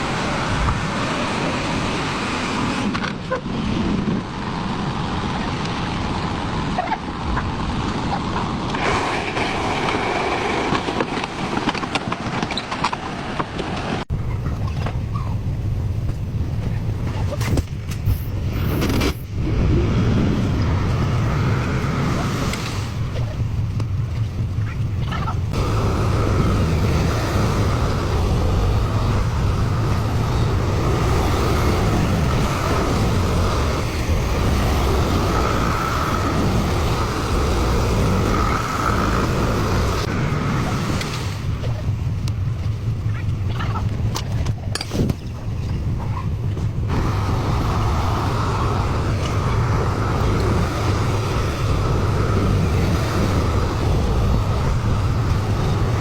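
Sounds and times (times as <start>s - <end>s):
steady rushing noise: 0.0s - 56.0s
excavator diesel engine rumbling: 18.1s - 40.9s.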